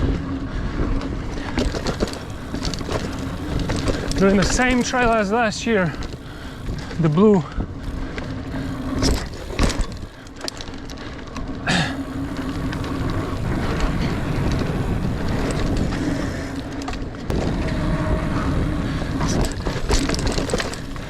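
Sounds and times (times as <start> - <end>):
bike rattling: 0.0 - 21.0
bike tyres rolling on dirt: 0.0 - 21.0.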